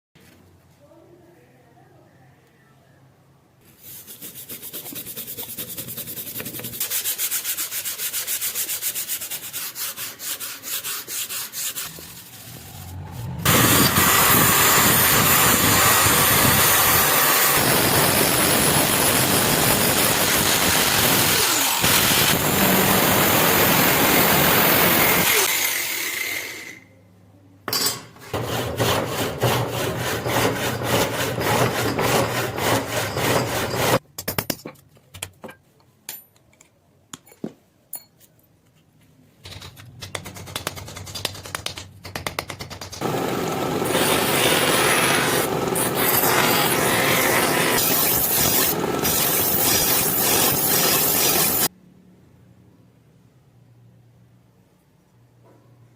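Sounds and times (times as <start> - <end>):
rapid scraping strokes: 3.6 - 15.7, 28.3 - 34.0
power tool grinding metal: 13.4 - 26.8, 28.4 - 34.0, 43.0 - 51.7.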